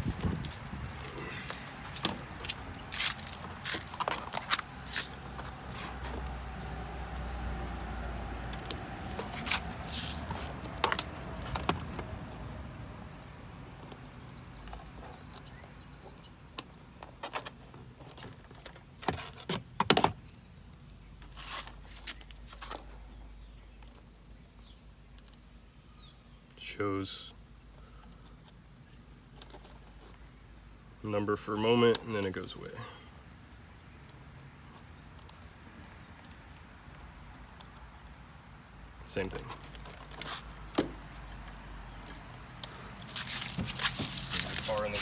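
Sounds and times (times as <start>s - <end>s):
clicks and knocks handling car parts: 0.0s - 12.4s, 13.7s - 23.0s, 39.2s - 45.0s.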